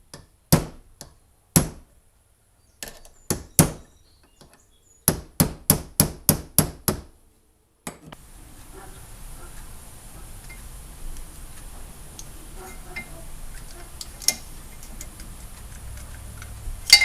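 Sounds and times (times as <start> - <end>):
faint steady hiss: 7.1 - 17.0.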